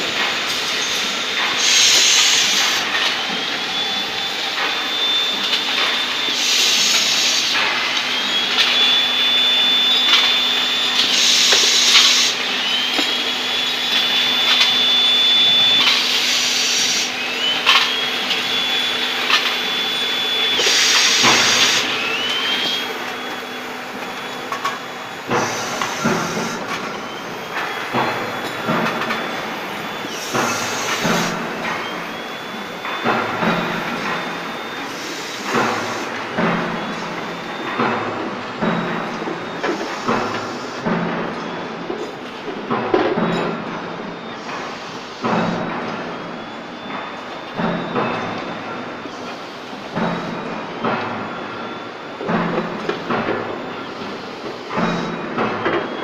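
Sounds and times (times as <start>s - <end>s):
hissing cutting noise: 0.0s - 38.8s
rising machine whine: 0.0s - 56.0s
motor hum: 2.5s - 39.7s.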